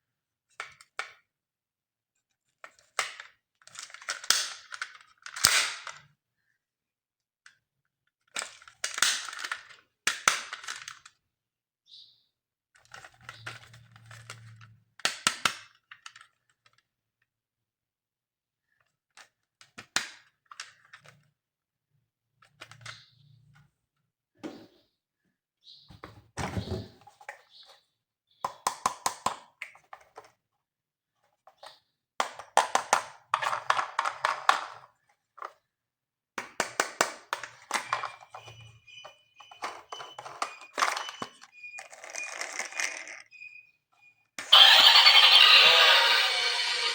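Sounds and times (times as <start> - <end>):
plastic toy clicking and crackling: 2.7 - 6.1, 8.2 - 11.2, 32.2 - 35.6, 39.6 - 43.4, 44.4 - 46.9.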